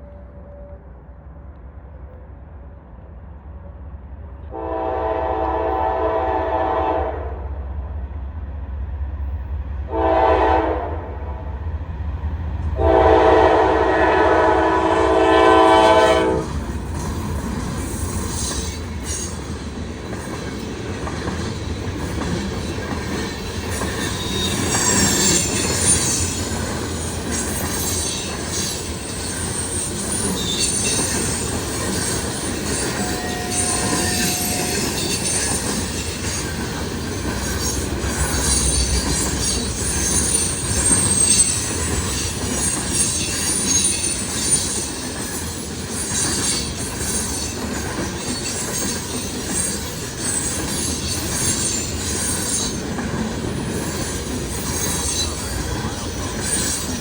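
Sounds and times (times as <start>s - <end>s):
train wheels rumbling on rail: 0.0s - 57.0s
wheel squeals: 23.4s - 36.6s, 37.4s - 52.9s.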